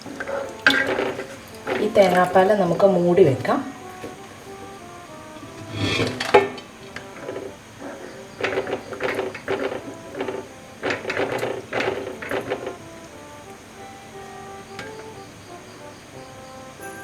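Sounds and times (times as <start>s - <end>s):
metal cookware clinking: 0.0s - 4.7s, 5.4s - 13.1s
pot lid clattering: 0.0s - 15.6s
soft background music: 0.0s - 17.0s.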